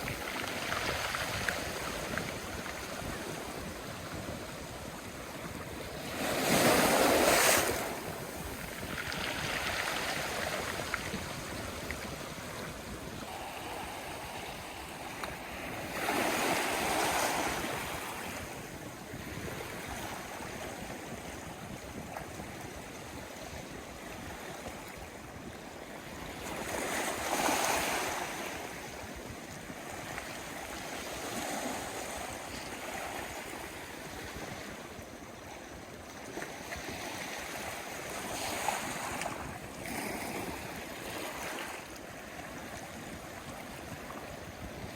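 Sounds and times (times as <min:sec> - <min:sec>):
sea waves washing onto shore: 0:00.0 - 0:35.8.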